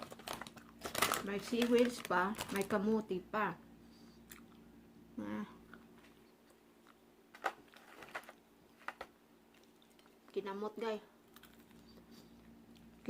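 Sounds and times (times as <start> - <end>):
person chewing food: 4.1 - 4.7, 5.6 - 8.3, 9.4 - 10.3, 11.2 - 13.0.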